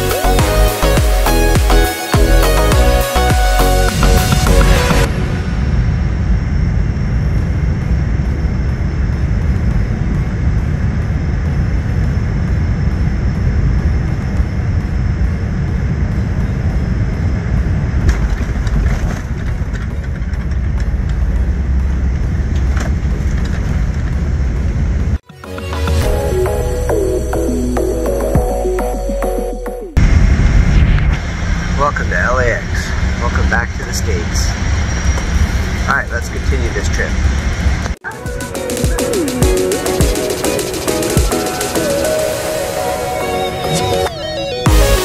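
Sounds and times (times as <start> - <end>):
airliner cabin engine rumble: 4.5 - 25.2.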